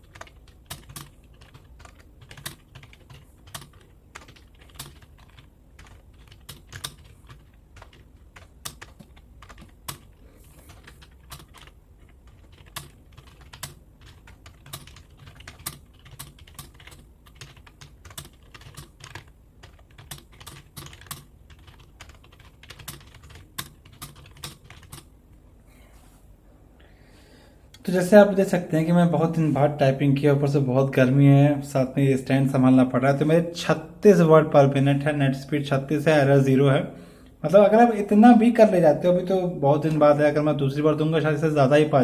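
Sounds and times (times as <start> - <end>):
typing on computer keyboard: 0.0 - 25.1.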